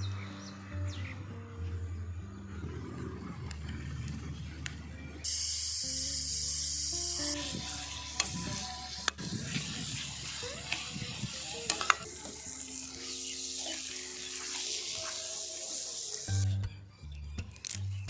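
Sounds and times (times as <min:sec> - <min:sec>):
meat sizzling in a pan: 0:05.3 - 0:16.5.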